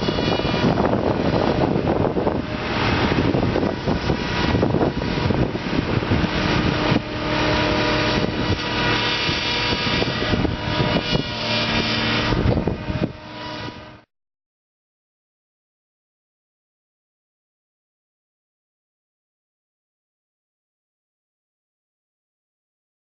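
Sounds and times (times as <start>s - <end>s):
wind buffeting microphone: 0.0s - 14.0s
farm machinery engine running: 0.0s - 14.1s.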